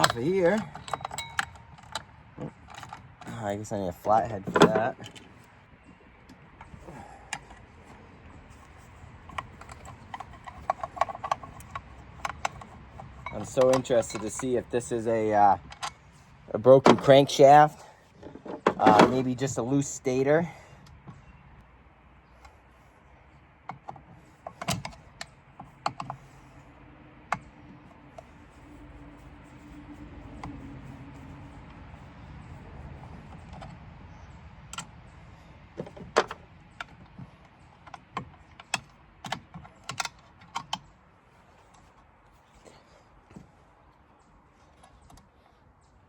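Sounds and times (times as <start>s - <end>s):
metallic clicks of hand tools: 0.0s - 3.3s.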